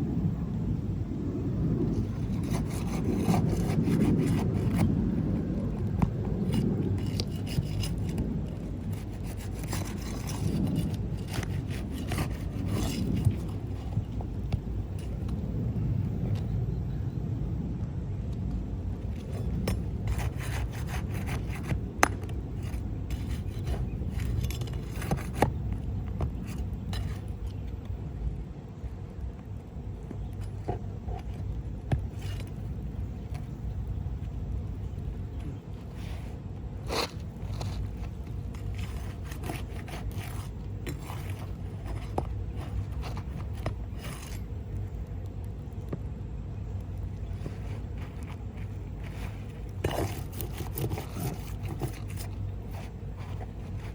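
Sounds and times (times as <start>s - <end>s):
steady low rumble: 0.0s - 53.9s
scraping on roof shingles: 1.9s - 15.4s, 19.0s - 27.6s, 35.4s - 44.5s, 47.3s - 53.9s.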